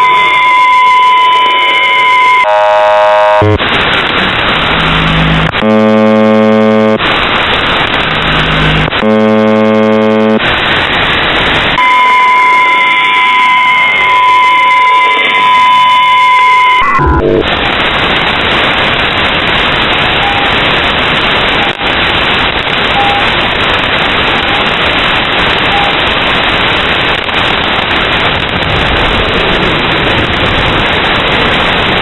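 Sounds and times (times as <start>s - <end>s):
harsh radio buzzes: 0.0s - 18.7s
radio static with whistling tone: 0.0s - 25.0s, 25.6s - 26.6s
rushing radio noise: 0.0s - 28.4s.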